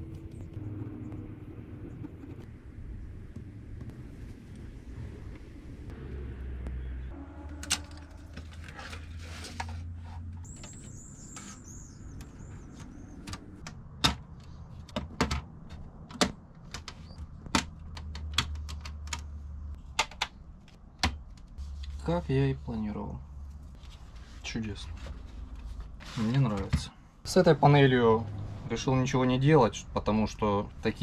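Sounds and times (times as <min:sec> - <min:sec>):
low hum: 0:00.0 - 0:14.7.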